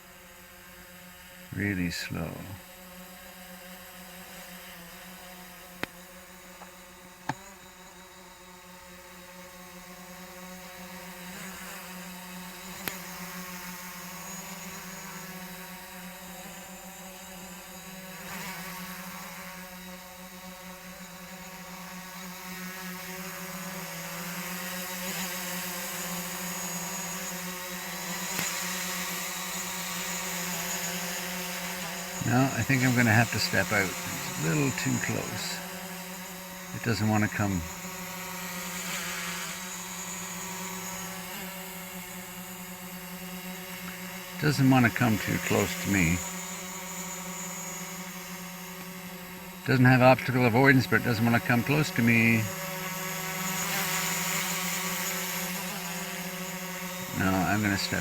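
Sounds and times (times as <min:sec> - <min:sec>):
drone propellers buzzing: 0:25.2 - 0:58.0.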